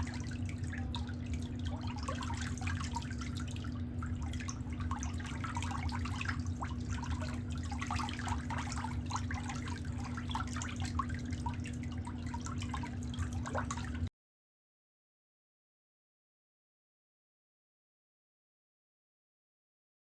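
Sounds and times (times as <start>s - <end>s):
steady low hum: 0.0s - 14.1s
water dripping and trickling: 0.0s - 14.1s.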